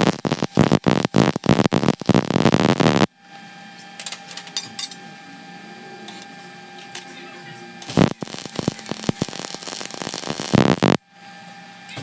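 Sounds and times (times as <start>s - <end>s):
welding arc crackling: 0.0s - 3.1s, 7.8s - 11.0s
faint steady hum: 0.0s - 11.3s.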